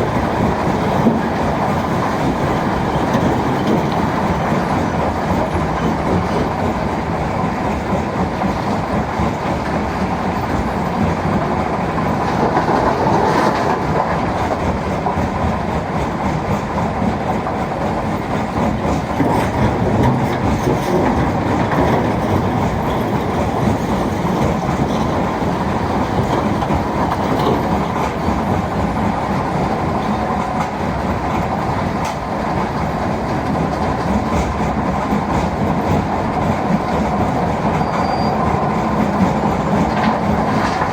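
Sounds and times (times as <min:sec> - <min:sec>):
engine noise: 0:00.0 - 0:40.9
stone crusher rattle and clatter: 0:18.4 - 0:28.4.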